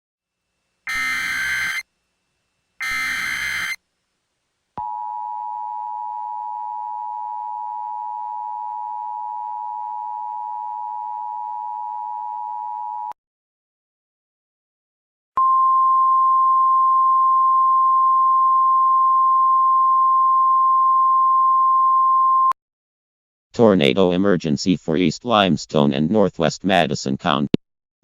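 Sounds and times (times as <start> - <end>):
buzzing digital data bursts: 0.9 - 1.8, 2.8 - 3.8
two-tone attention signal: 0.9 - 1.8, 2.8 - 3.8.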